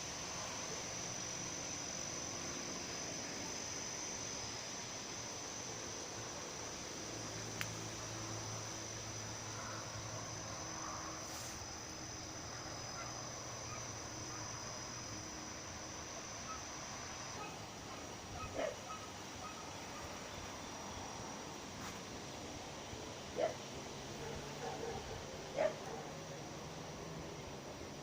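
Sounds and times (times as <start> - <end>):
wind: 0.0 - 28.0
animal call: 17.4 - 20.1.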